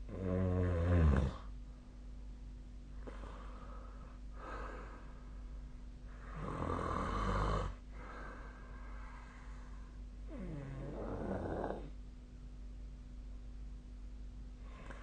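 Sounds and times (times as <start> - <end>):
person snoring: 0.1 - 1.5, 6.1 - 9.3, 10.3 - 12.0.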